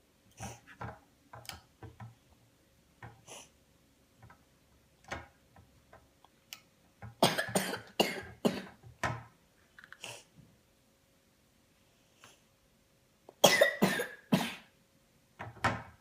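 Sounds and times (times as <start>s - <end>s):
child coughing: 7.2s - 8.8s, 13.4s - 14.7s.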